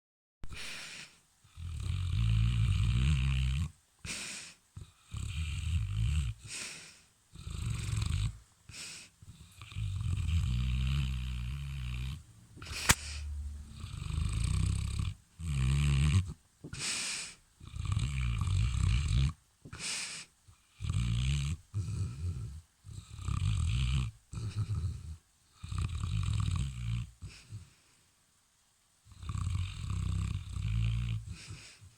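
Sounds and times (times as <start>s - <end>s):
dog snoring: 1.4s - 19.9s, 20.5s - 27.8s, 29.0s - 31.9s
sharp click: 12.6s - 13.2s.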